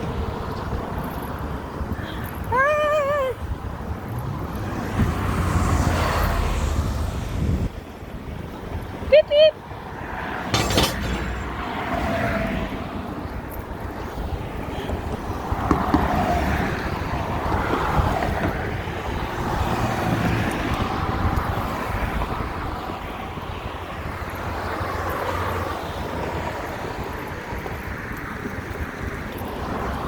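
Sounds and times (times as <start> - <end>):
scooter riding rumble: 13.0 - 23.2.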